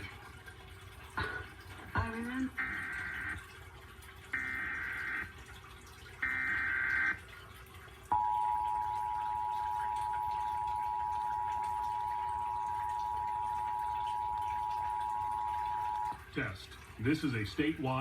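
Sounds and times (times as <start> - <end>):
two-tone attention signal: 8.1 - 16.2.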